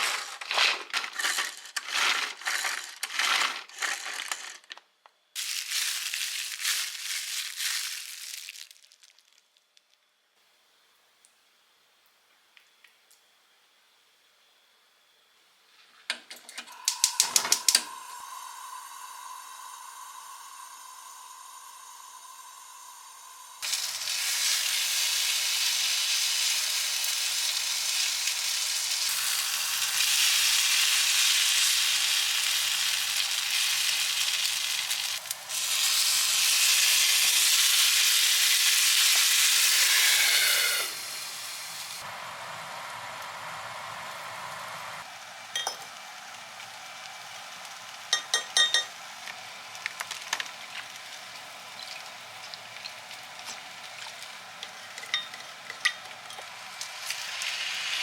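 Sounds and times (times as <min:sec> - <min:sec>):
food sizzling in a frying pan: 0:05.4 - 0:09.1, 0:17.9 - 0:58.0.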